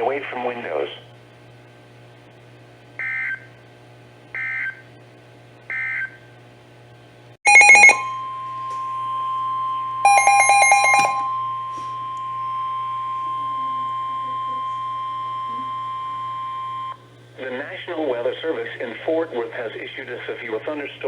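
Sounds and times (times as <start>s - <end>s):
steady warning alarm tone: 3.0s - 3.4s, 4.4s - 4.8s, 5.7s - 6.2s, 7.5s - 17.0s.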